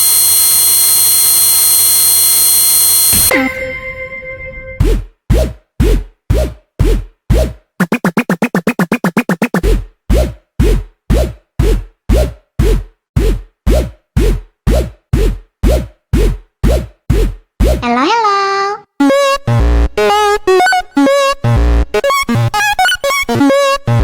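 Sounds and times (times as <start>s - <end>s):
drum machine kick drum: 3.1s - 3.3s, 4.8s - 17.8s
fast drum roll: 7.8s - 9.7s.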